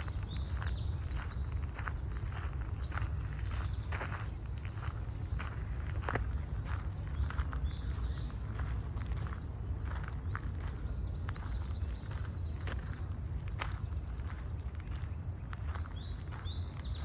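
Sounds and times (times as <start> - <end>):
footsteps on a trail: 0.0 - 17.0
small birds chirping: 0.0 - 17.0.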